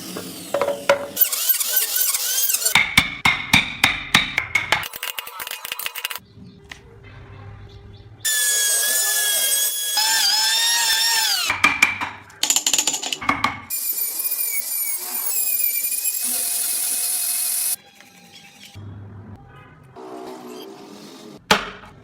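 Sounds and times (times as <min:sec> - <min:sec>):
power carving tool whining: 0:00.0 - 0:02.8, 0:08.3 - 0:11.5, 0:13.7 - 0:17.8.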